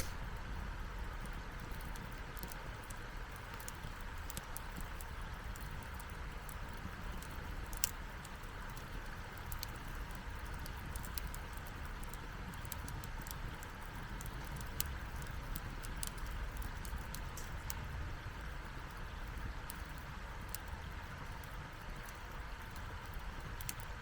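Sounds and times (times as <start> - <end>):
campfire wood crackling and popping: 0.0 - 24.0.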